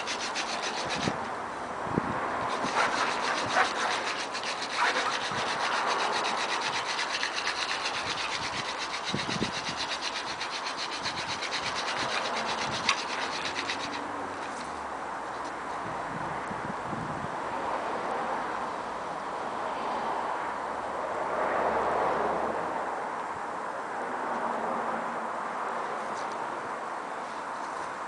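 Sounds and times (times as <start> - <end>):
hand drill grinding wood on wood: 0.0 - 1.2, 2.5 - 14.1.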